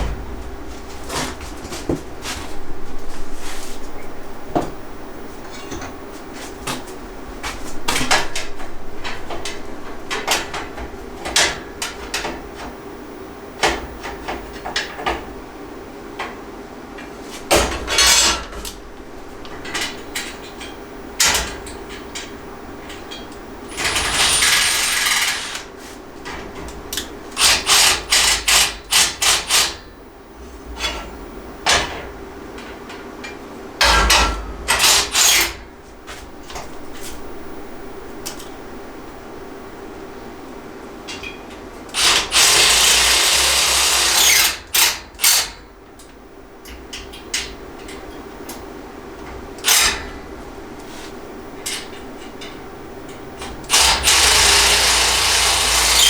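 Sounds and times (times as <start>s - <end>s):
faint steady hum: 0.0s - 56.0s.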